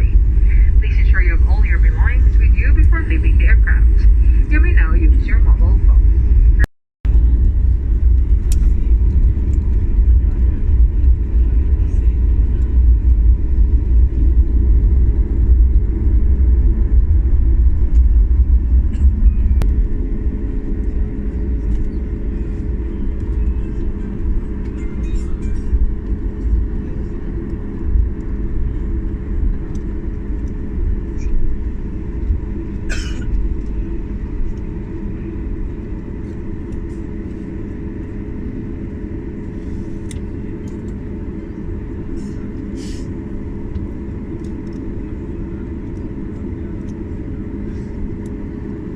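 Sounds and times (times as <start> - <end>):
vehicle cabin rumble: 0.0 - 38.2
faint constant hum: 0.0 - 48.9.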